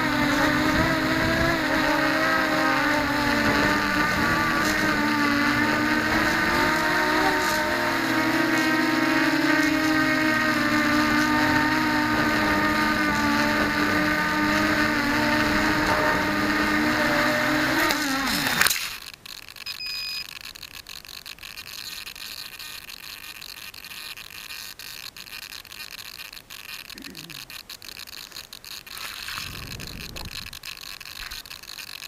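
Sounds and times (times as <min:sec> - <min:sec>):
wind buffeting microphone: 0:00.0 - 0:02.2, 0:29.3 - 0:30.6
quadcopter motors whining: 0:00.0 - 0:32.0.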